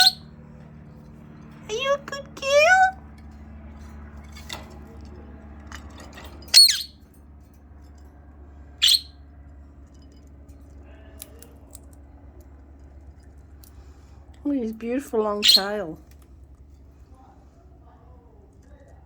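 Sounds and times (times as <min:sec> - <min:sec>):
bird high-pitched calls: 0:00.0 - 0:00.2, 0:06.5 - 0:07.0, 0:08.8 - 0:09.2, 0:15.4 - 0:15.8.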